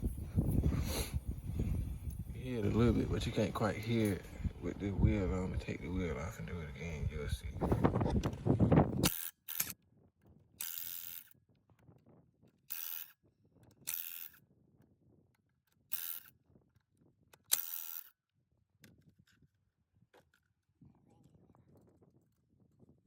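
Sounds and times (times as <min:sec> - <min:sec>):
impact wrench whirring: 0:09.0 - 0:09.7, 0:10.6 - 0:11.3, 0:12.7 - 0:13.2, 0:13.9 - 0:14.4, 0:15.9 - 0:16.3, 0:17.5 - 0:18.1.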